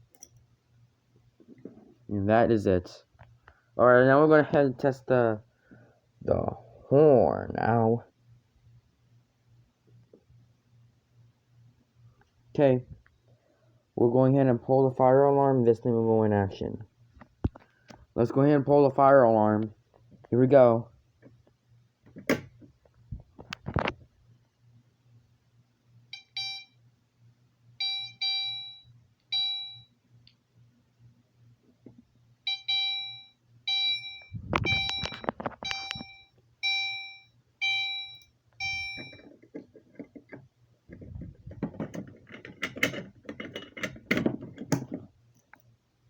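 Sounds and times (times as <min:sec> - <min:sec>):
steady low hum: 0:00.0 - 0:46.0
fire alarm chime dings: 0:26.1 - 0:26.8, 0:27.8 - 0:29.9, 0:32.5 - 0:39.2
clattering handling noise: 0:38.8 - 0:45.6.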